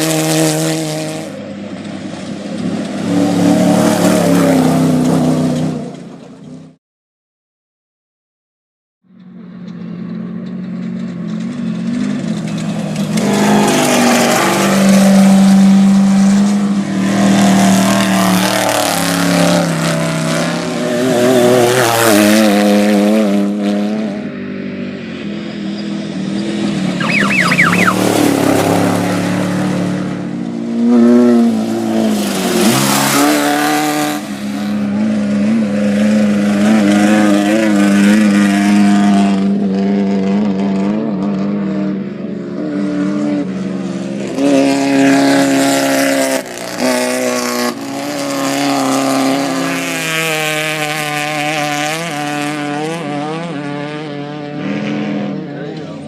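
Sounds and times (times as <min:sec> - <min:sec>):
race vehicle engine running hard: 0:00.0 - 0:06.8, 0:09.0 - 0:56.0
rushing noise: 0:27.0 - 0:29.7.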